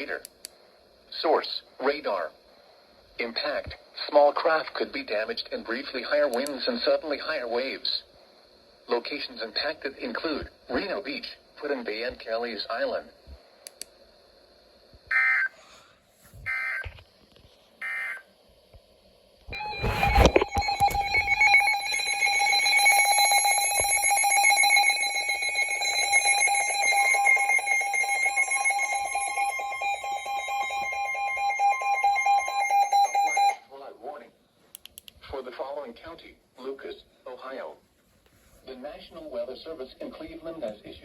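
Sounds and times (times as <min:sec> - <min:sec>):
digital data tone bursts: 0:19.6 - 0:33.6.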